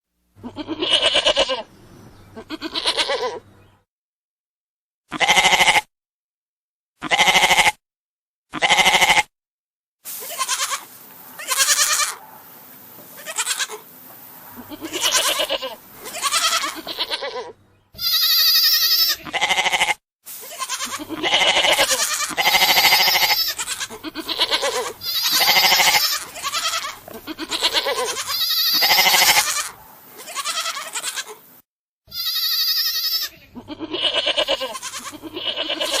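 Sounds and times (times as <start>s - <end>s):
goats bleating: 0.4s - 3.5s, 5.1s - 5.9s, 7.0s - 7.8s, 8.5s - 9.3s, 10.2s - 31.5s, 32.1s - 36.0s
faint background hiss: 10.1s - 17.8s, 20.3s - 31.6s.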